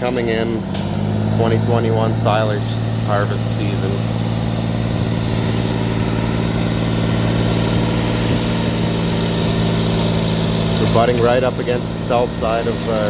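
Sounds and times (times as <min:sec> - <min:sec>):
vehicle engine running steadily: 0:00.0 - 0:13.0.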